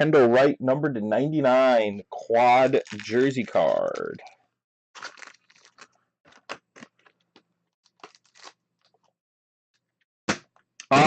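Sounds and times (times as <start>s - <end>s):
trading cards rustling: 2.6s - 4.3s, 5.0s - 8.6s.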